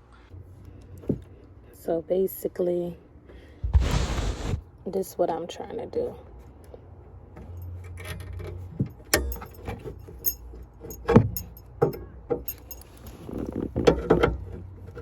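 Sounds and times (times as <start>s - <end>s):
metal car jack clinking and rattling: 7.5s - 15.0s.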